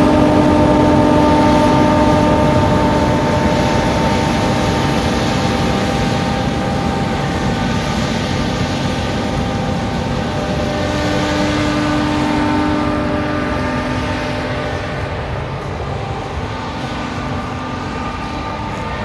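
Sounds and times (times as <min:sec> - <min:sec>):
combine harvester drone: 0:00.0 - 0:19.0.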